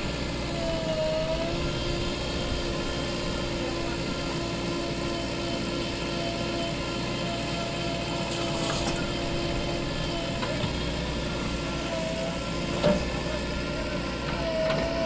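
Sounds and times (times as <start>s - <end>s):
constant whine: 0.0s - 15.0s
diesel machinery engine drone: 0.0s - 15.0s.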